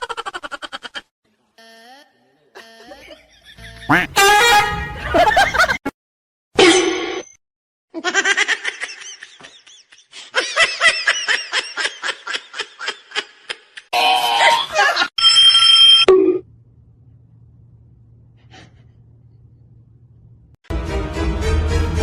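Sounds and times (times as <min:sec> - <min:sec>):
person laughing: 0:02.6 - 0:04.2.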